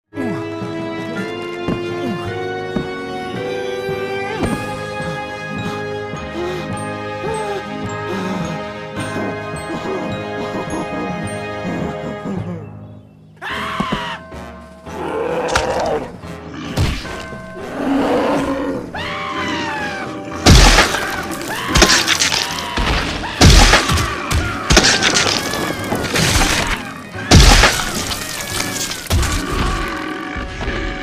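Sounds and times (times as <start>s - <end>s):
background music: 0.1s - 31.0s
cartoon crashing hits: 21.8s - 26.7s.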